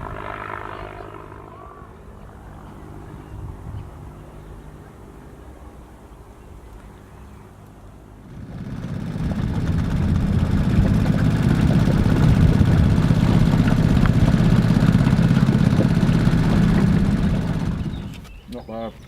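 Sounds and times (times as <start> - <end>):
outboard motor droning: 4.0 - 18.3.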